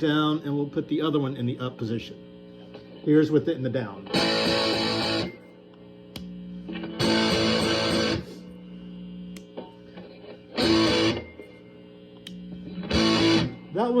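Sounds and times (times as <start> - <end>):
distorted electric guitar chords: 2.2 - 5.6, 6.3 - 14.0.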